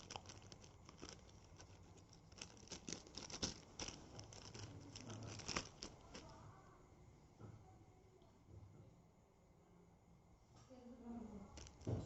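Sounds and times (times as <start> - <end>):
plastic containers clicking: 0.0 - 6.3, 11.6 - 12.0
light rustling: 0.0 - 6.4.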